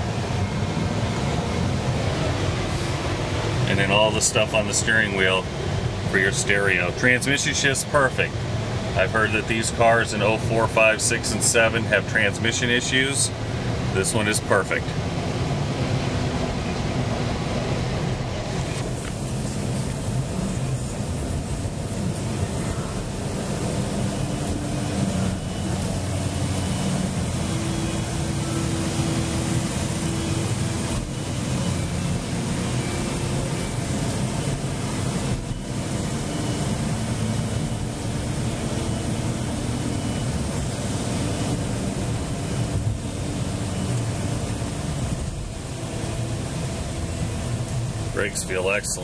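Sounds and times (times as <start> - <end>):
tyre and road noise: 0.0 - 10.4, 11.5 - 49.0
car engine hum: 0.0 - 49.0.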